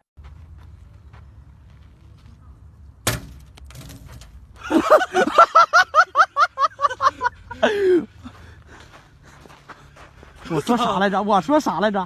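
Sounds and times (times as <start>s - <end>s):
person laughing hard: 4.6s - 8.1s.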